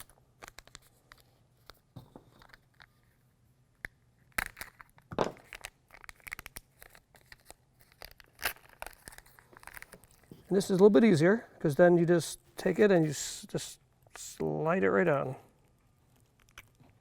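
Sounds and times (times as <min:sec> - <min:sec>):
package crinkling and rustling: 0:04.4 - 0:11.0.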